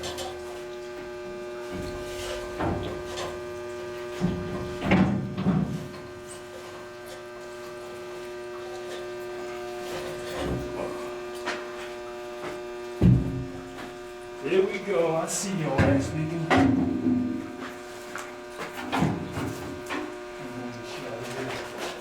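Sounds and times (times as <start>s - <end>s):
electrical hum: 0.0s - 22.0s
boiler door clanking and scraping: 13.0s - 13.8s, 15.7s - 17.6s.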